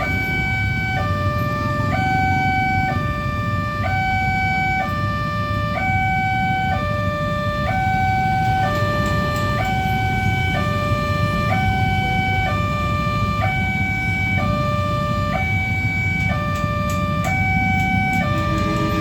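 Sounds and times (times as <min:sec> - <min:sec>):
two-tone warning siren: 0:00.0 - 0:19.0
low rumble: 0:17.4 - 0:19.0.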